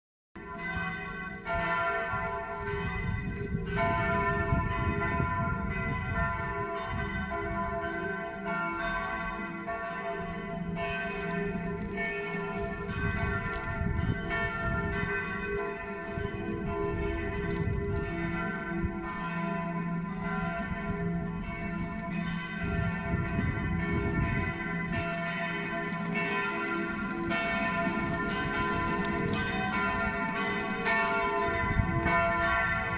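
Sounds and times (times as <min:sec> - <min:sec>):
church bells ringing: 0:00.4 - 0:32.9.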